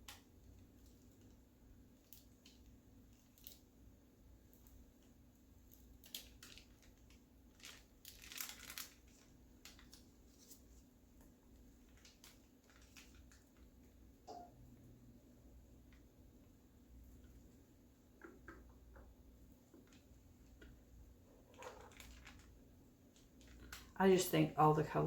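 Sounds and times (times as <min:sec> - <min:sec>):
crinkly rustle: 0:05.6 - 0:14.0, 0:19.8 - 0:24.0.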